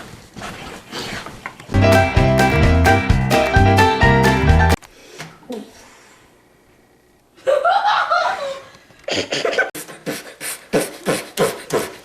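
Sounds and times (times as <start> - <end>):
beatboxing mouth percussion: 9.1 - 12.0.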